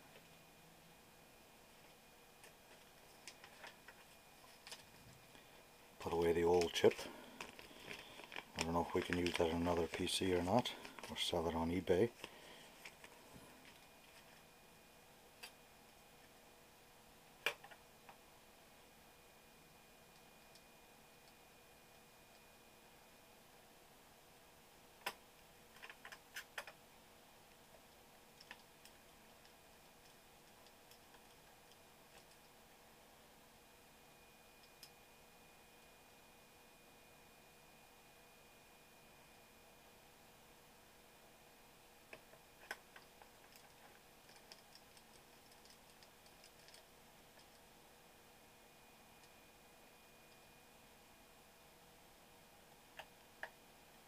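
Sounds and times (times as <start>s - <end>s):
small hard parts clicking: 42.6s - 47.6s.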